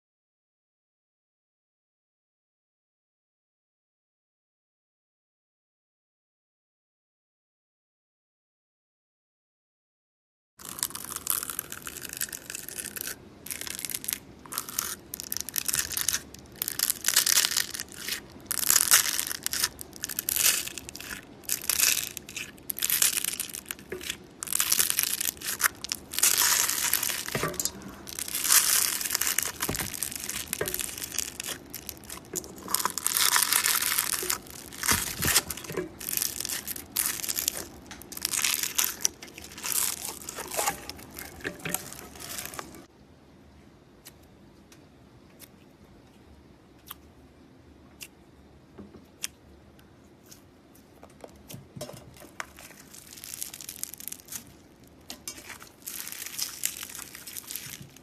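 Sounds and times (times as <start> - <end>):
slime squeezed by hand crackling: 10.6 - 42.8, 52.4 - 58.0.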